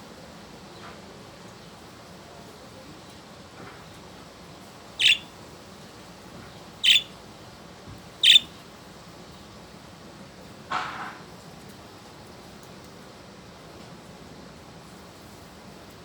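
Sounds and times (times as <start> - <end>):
budgerigars squawking: 5.0 - 5.3, 6.8 - 7.1, 8.2 - 8.5.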